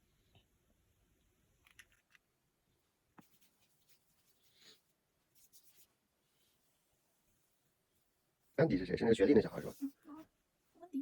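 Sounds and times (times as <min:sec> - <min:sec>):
faint soft rustles: 0:01.7 - 0:08.6, 0:09.3 - 0:10.9.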